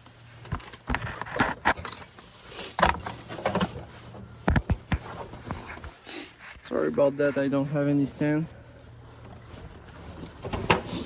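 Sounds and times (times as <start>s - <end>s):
metal parts clanking: 0.0s - 4.1s.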